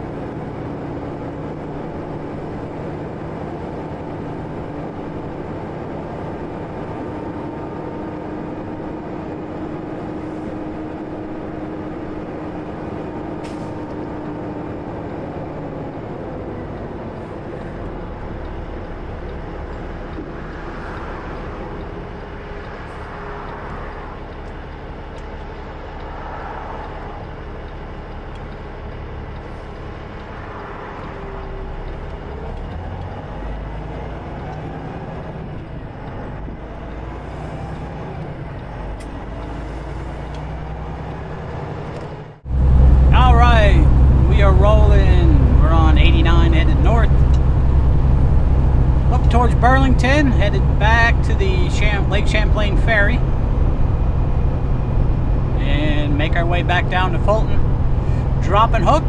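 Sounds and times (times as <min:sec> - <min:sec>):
deep engine rumble: 0:00.0 - 0:59.0
road noise: 0:00.0 - 0:59.0
truck engine drone: 0:00.0 - 0:59.0.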